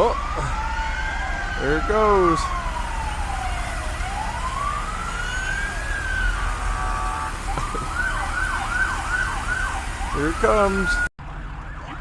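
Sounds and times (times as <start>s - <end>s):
emergency siren wailing: 0.0s - 12.0s
steady horn-like tone: 6.4s - 9.0s.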